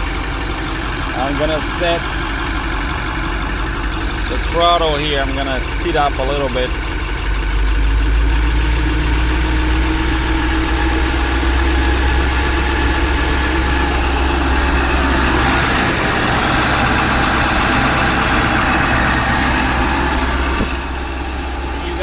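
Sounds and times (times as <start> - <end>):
diesel engine idling: 0.0 - 22.0.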